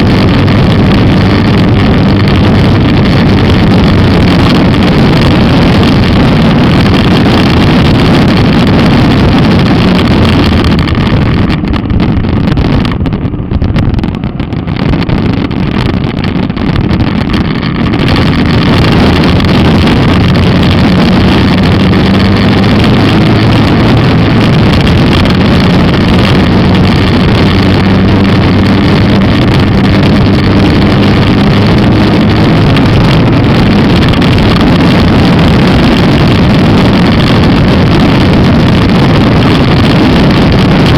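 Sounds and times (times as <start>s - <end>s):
motorcycle engine running: 0.0s - 40.9s.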